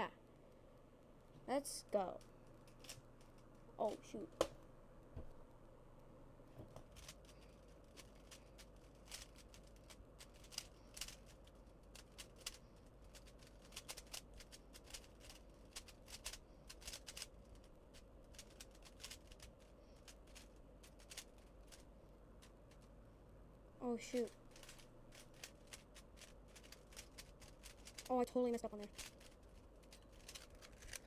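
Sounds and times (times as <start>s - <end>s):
puzzle cube clicking: 9.0s - 11.3s, 12.0s - 17.3s, 18.3s - 19.5s.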